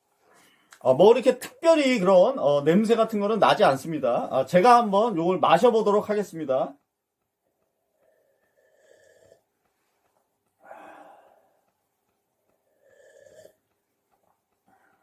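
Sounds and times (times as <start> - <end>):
person breathing: 0.2 - 0.8, 7.9 - 9.4, 10.0 - 11.8, 12.5 - 13.6, 14.6 - 15.0
person slurping tea: 12.6 - 13.8.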